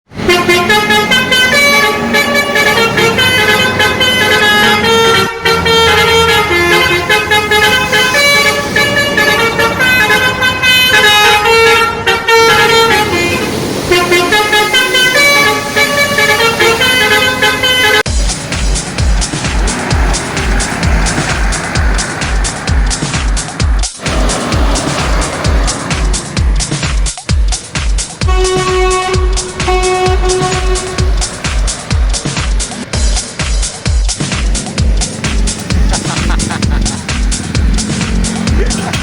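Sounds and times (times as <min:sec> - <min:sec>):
multi-tone air horn tune: 0:00.2 - 0:18.2, 0:27.6 - 0:33.4.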